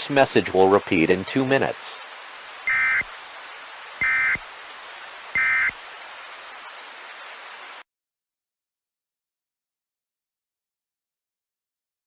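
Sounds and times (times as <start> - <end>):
static hiss: 0.0 - 7.9
digital data warble: 2.7 - 3.1, 4.0 - 4.4, 5.4 - 5.8.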